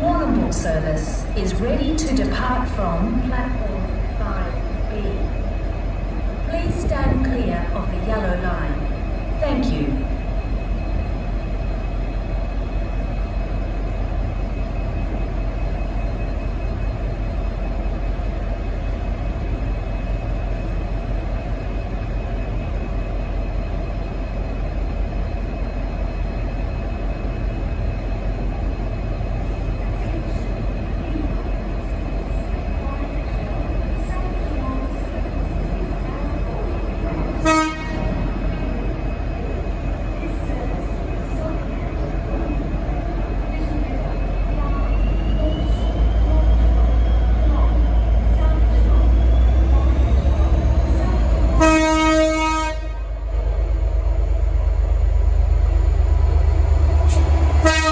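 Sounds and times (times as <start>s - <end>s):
diesel locomotive engine droning: 0.0s - 57.9s
low train horn toot: 37.4s - 38.4s, 51.5s - 53.2s, 57.1s - 57.9s.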